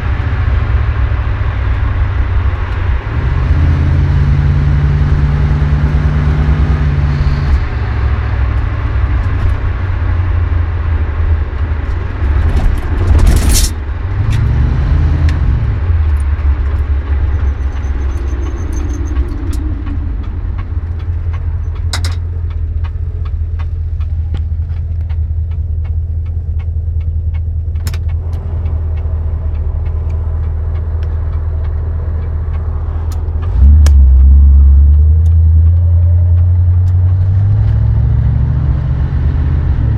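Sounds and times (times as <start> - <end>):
car engine droning: 0.0 - 39.9
loud rattle: 12.2 - 13.8
sharp clicks: 17.7 - 37.8.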